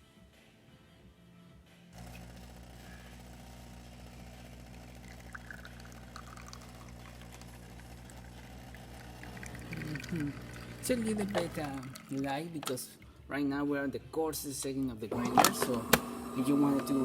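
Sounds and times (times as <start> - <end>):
water pump humming: 2.0 - 12.7, 15.1 - 17.0
espresso trickling into cup: 2.0 - 12.8, 15.2 - 17.0.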